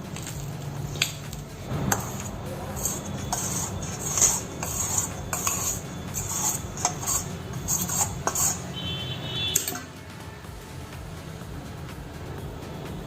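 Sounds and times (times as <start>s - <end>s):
utensil scraping in a bowl: 0.1s - 10.0s.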